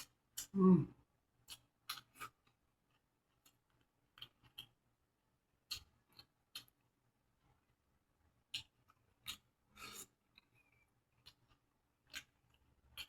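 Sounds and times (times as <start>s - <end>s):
mouth clicks and chewing: 0.0s - 0.6s, 1.4s - 4.8s, 5.6s - 6.9s, 8.4s - 13.0s.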